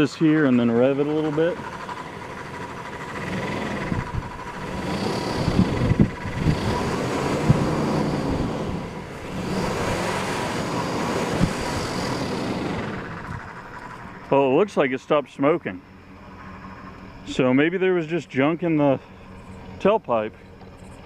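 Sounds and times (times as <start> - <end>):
car engine revving: 0.0 - 15.1.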